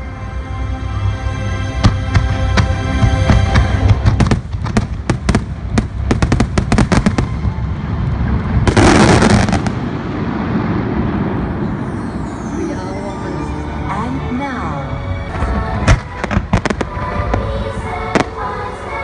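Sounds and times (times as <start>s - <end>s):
fireworks bangs and cracks: 1.8s - 12.0s, 15.4s - 18.5s
fireworks crackling burst: 2.0s - 12.5s, 15.9s - 19.0s
low rumble: 2.6s - 17.9s
show music: 11.6s - 19.0s.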